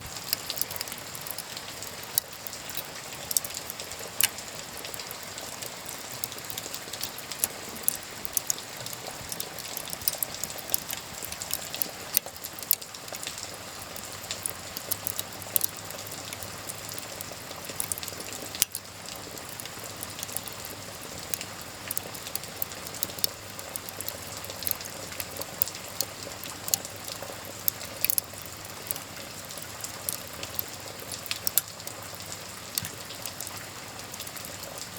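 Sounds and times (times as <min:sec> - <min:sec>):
rain hissing: 0:00.0 - 0:34.9
wood fire crackling and popping: 0:00.0 - 0:34.9.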